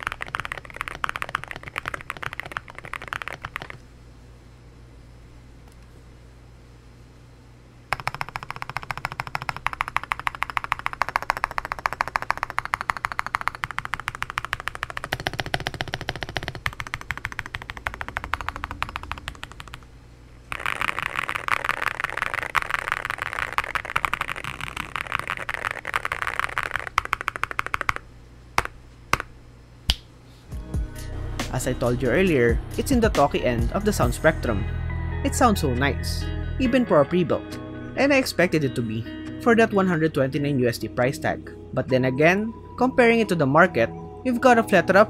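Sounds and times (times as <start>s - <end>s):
fast typing on mechanical keyboard: 0.0s - 3.8s, 7.9s - 19.9s, 20.5s - 28.0s.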